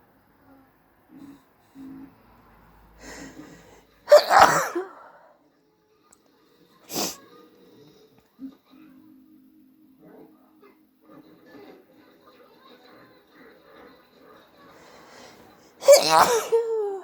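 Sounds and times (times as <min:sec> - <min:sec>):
short sharp breath: 0:02.9 - 0:03.9, 0:14.8 - 0:15.6
person sneezing: 0:04.1 - 0:05.3, 0:06.9 - 0:07.2, 0:15.8 - 0:17.0.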